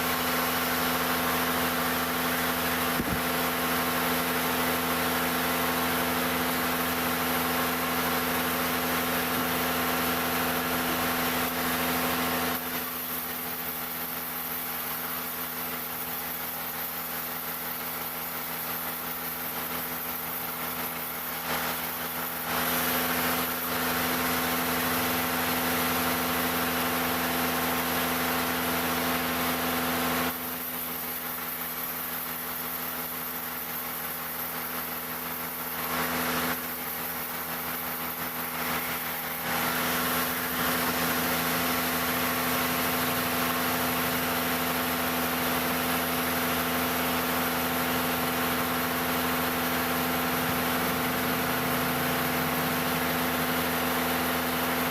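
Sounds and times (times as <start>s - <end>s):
sawmill engine running: 0.0s - 54.9s.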